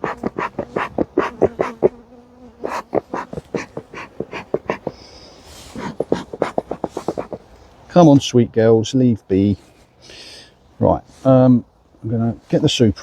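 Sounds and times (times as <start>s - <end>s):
sharp taps: 0.0s - 1.9s, 2.7s - 5.0s, 5.8s - 7.4s
bees buzzing: 0.0s - 7.5s.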